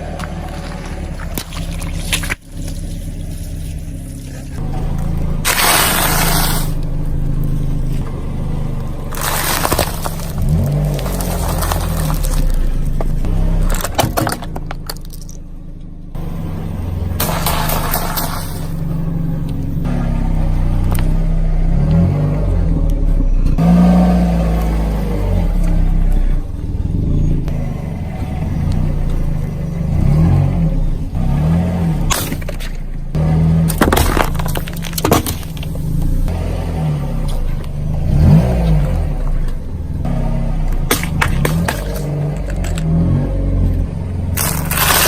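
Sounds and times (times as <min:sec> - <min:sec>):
vehicle engine revving: 0:00.0 - 0:15.2, 0:15.8 - 0:45.0
crunching and cracking: 0:00.0 - 0:15.6, 0:31.2 - 0:36.3, 0:40.7 - 0:43.1, 0:44.3 - 0:45.0.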